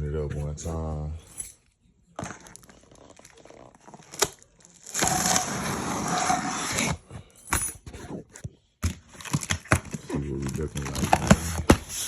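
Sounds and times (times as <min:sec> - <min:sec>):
cardboard scraping and tearing: 0:02.3 - 0:07.1, 0:09.1 - 0:12.0.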